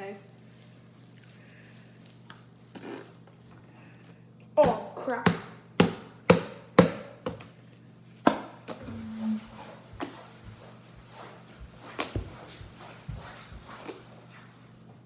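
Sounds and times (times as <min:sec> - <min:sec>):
low steady hum: 0:07.6 - 0:09.8.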